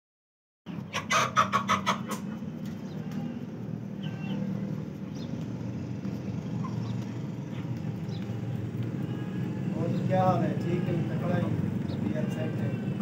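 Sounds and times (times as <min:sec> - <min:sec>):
chicken clucking: 0:00.7 - 0:05.3, 0:06.0 - 0:08.6.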